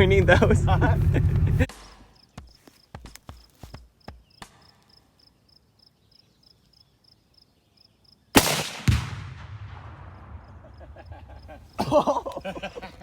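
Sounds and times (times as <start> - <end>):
low rumble: 0.0 - 1.7
insect chirping: 1.6 - 8.3
rifle shot: 8.4 - 10.6
explosion boom: 8.9 - 11.2.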